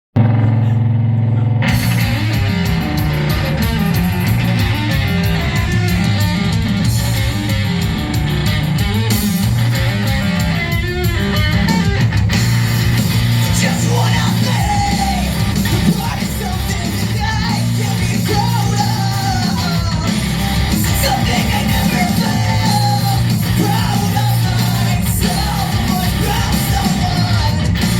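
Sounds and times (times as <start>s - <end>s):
drums: 0.1s - 27.9s
heavy bass: 0.1s - 27.9s
electric guitar: 0.2s - 27.9s
person yelling vocals: 13.5s - 20.1s, 20.9s - 27.6s.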